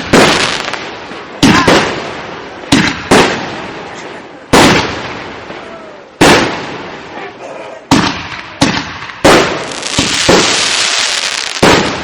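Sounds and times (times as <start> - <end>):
firework shells bursting: 8.6 - 12.0.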